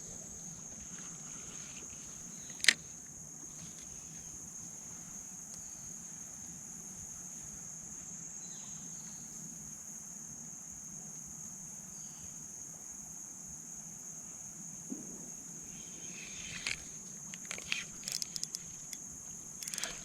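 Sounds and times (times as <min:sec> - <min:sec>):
insects droning: 0:00.0 - 0:20.0
short clicks and rustles: 0:01.0 - 0:02.9, 0:16.1 - 0:20.0.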